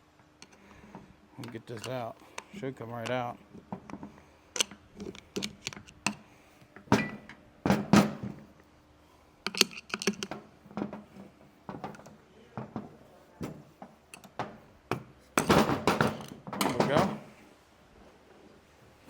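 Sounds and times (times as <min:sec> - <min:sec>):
metal parts knocking and clinking: 0:09.4 - 0:11.1, 0:15.4 - 0:17.2.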